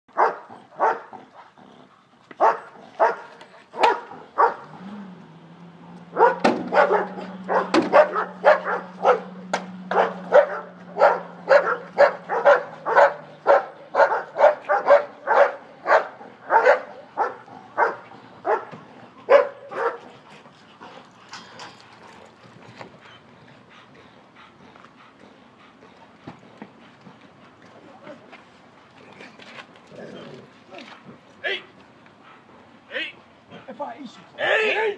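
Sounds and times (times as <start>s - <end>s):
dog barking: 0.2s - 1.2s, 2.4s - 4.7s, 6.1s - 20.1s.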